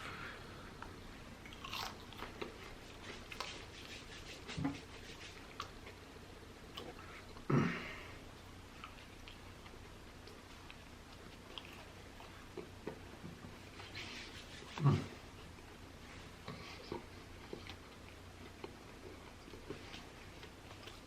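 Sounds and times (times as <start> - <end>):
person chewing and biting food: 0.8 - 3.5.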